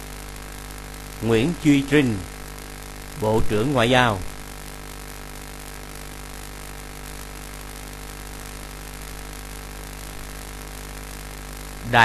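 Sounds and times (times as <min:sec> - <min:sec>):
electrical buzz and hiss: 0:00.0 - 0:12.0.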